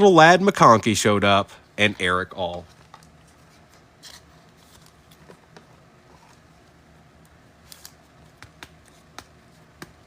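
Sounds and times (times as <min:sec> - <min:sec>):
cards rustling: 0:02.4 - 0:05.4, 0:07.6 - 0:10.0.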